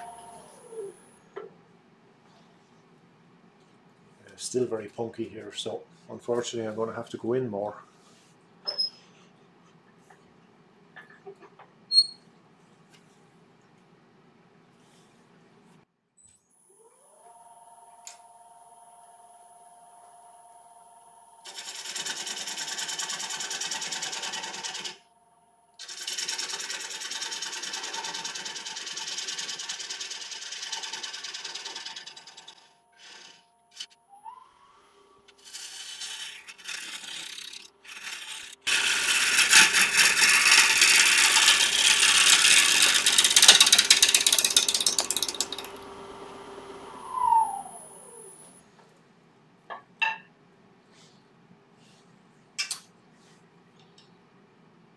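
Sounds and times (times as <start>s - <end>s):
wood lathe spinning: 21.5s - 25.0s, 25.8s - 33.9s, 35.3s - 48.5s
gouge scraping wood: 25.9s - 33.9s, 35.3s - 44.4s
lathe whine dropping in pitch: 46.6s - 48.6s.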